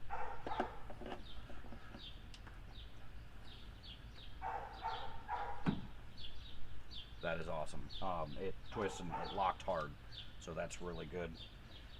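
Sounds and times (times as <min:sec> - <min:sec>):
small birds chirping: 0:00.0 - 0:11.9.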